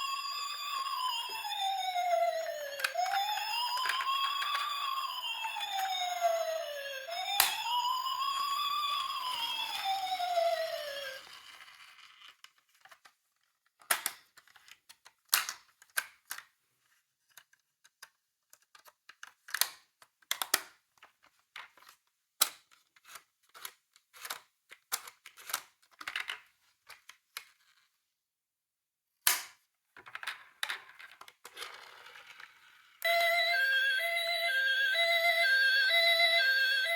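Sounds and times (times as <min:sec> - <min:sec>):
toy cars clicking together: 0:11.5 - 0:16.5, 0:17.3 - 0:27.5.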